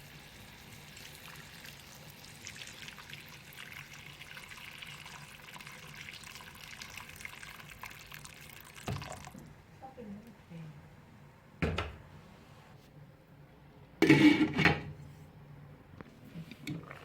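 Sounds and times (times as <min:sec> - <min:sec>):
water poured into hot pan: 0:00.0 - 0:09.4.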